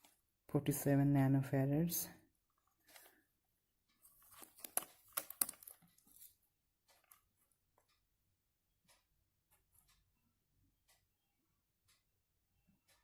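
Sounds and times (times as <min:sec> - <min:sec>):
handling rustles and clicks: 0:03.9 - 0:07.3.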